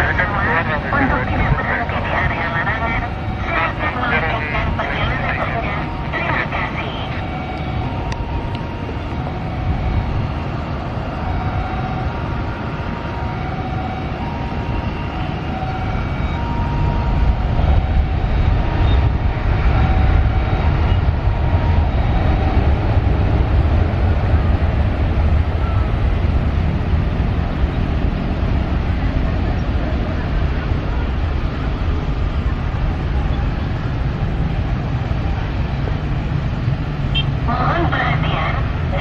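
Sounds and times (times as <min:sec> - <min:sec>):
jet engines rumbling: 0:00.0 - 0:39.0
wind buffeting microphone: 0:07.1 - 0:37.2.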